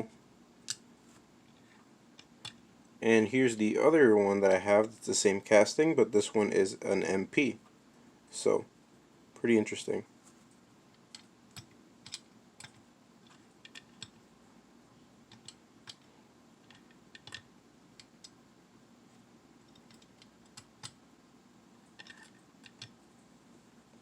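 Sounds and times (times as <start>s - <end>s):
clicks handling toy cars: 15.3s - 18.4s, 22.0s - 23.0s.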